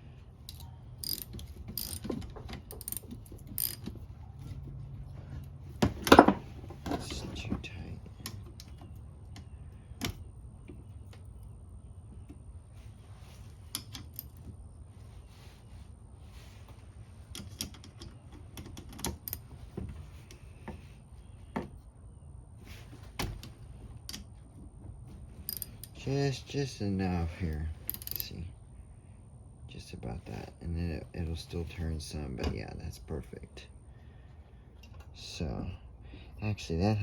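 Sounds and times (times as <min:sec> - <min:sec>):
wrench clicking on bolts: 0:00.4 - 0:03.9, 0:27.9 - 0:28.3.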